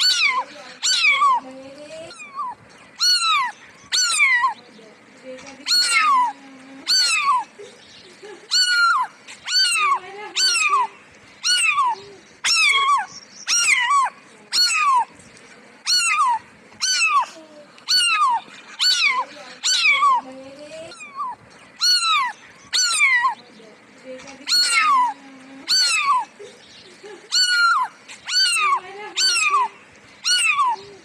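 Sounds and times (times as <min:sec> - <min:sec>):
cat meowing: 0:00.0 - 0:01.4, 0:02.1 - 0:04.6, 0:05.7 - 0:06.3, 0:06.9 - 0:07.4, 0:08.5 - 0:15.1, 0:15.9 - 0:20.2, 0:20.9 - 0:23.4, 0:24.5 - 0:26.3, 0:27.3 - 0:30.9.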